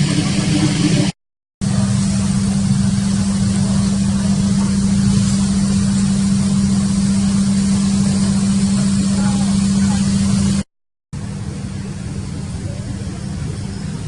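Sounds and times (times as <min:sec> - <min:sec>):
motor drone: 0:00.0 - 0:10.7.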